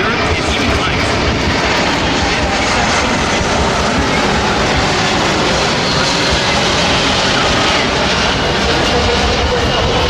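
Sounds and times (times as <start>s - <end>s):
jet engines roaring: 0.0s - 10.0s.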